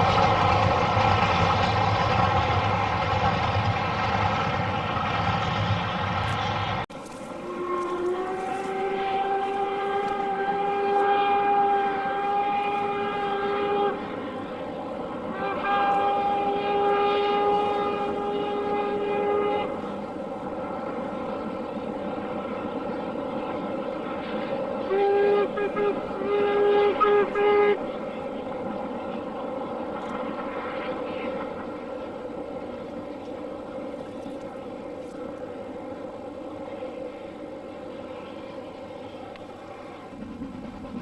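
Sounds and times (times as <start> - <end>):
steam locomotive rumbling: 0.0 - 41.0
steam whistle blasts: 7.3 - 14.6, 15.2 - 20.2, 24.8 - 28.2.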